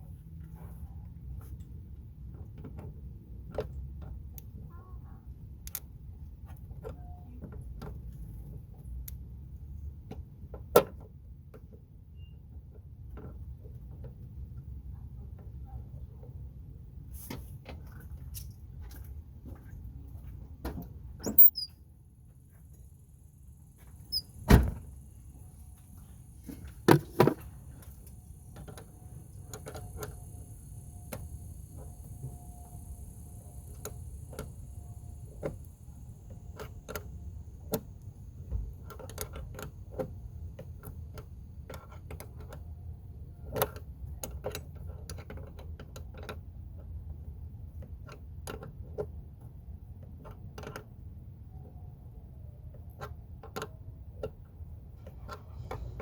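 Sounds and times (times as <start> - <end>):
low steady hum: 21.0 - 44.8.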